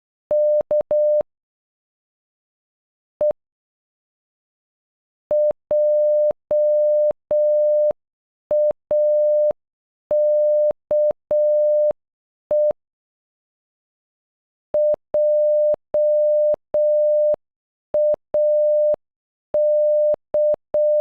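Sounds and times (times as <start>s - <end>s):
morse code beeps: 14.8s - 17.4s, 18.0s - 19.0s, 19.6s - 21.0s.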